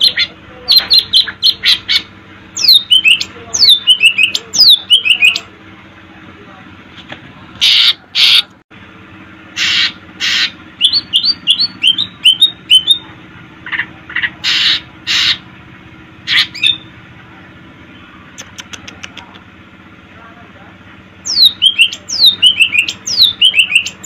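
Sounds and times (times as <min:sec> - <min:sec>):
bird squawking and chirping: 0:00.0 - 0:05.5, 0:07.6 - 0:08.5, 0:09.5 - 0:15.5, 0:16.2 - 0:16.9, 0:21.2 - 0:24.0.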